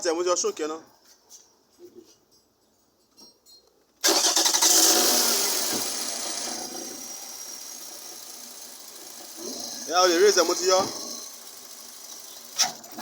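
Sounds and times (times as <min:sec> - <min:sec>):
engine starting and revving: 0:04.0 - 0:13.0
starter cranking: 0:04.0 - 0:13.0.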